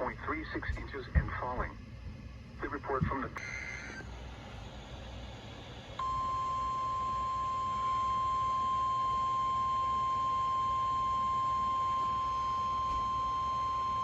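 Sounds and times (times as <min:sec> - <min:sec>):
radio hiss: 0:00.0 - 0:01.8, 0:02.6 - 0:04.2
steady high alarm tone: 0:06.0 - 0:14.0.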